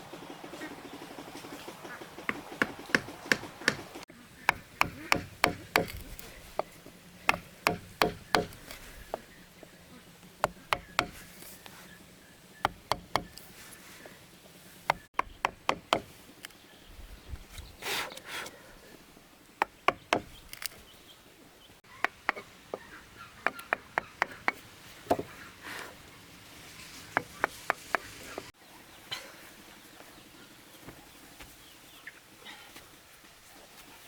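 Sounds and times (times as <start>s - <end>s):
sharp knocks of hard blows: 2.3s - 6.0s, 7.3s - 8.6s.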